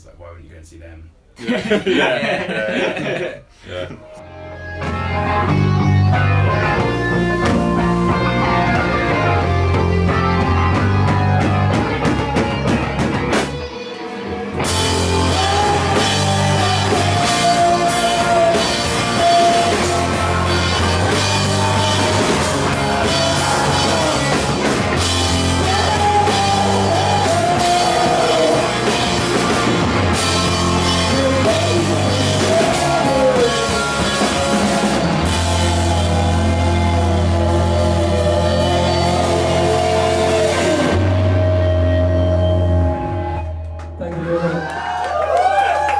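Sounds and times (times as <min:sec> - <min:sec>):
grunge rock band: 0:04.2 - 0:43.7.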